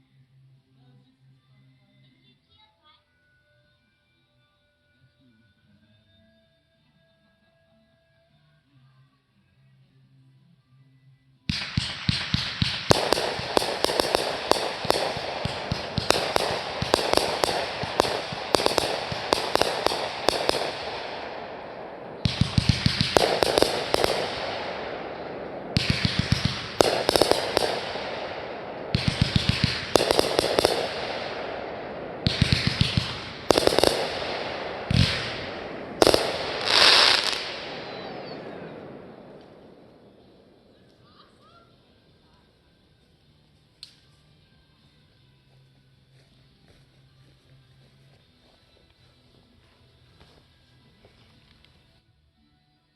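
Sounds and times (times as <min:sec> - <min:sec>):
fireworks bangs and crackles: 0:11.5 - 0:40.7
rushing fireworks swell: 0:11.7 - 0:40.8.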